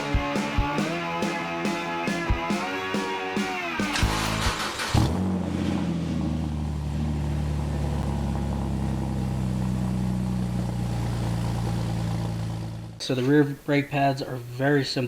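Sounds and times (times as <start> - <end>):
car engine starting and idling: 3.8 - 13.0.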